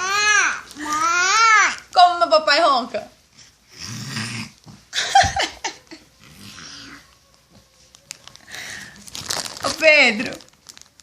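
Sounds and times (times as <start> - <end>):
child imitating snoring: 3.7 - 4.6, 6.2 - 7.0.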